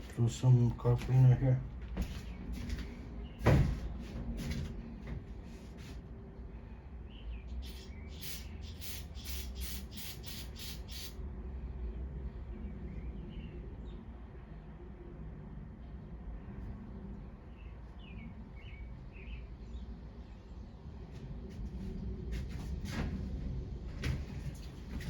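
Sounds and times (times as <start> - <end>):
aerosol spray hissing bursts: 7.6 - 11.2.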